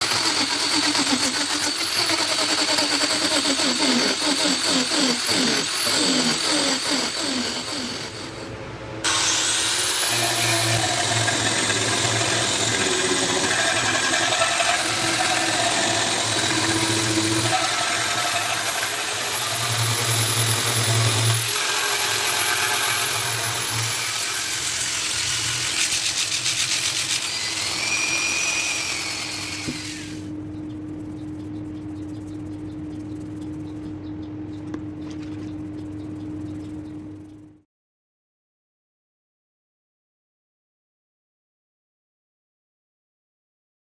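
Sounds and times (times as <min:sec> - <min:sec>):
wood lathe whine: 0:00.0 - 0:08.5, 0:09.1 - 0:30.3.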